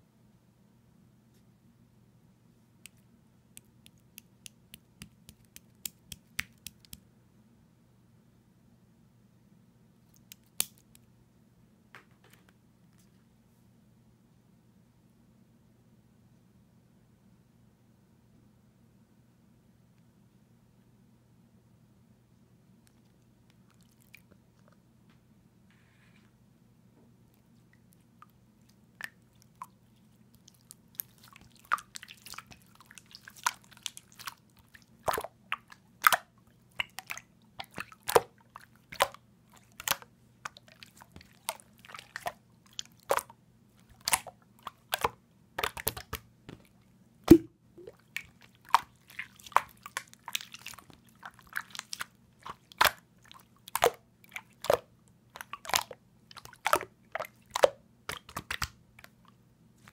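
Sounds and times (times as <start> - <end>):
faint low hum: 0.0 - 59.9
slime clicking and popping: 3.6 - 7.0, 10.2 - 11.0, 38.9 - 46.6, 57.5 - 58.8.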